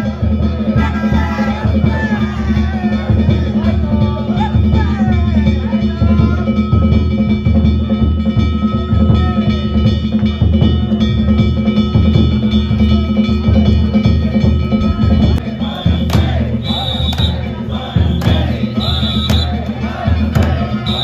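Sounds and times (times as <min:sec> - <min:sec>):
drum: 0:14.9 - 0:21.0.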